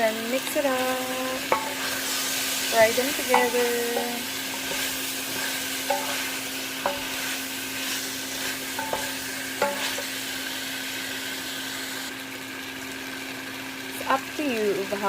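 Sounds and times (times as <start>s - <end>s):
food sizzling in a frying pan: 0.0s - 15.0s
utensil clinking against pan: 2.8s - 7.2s, 8.8s - 10.1s.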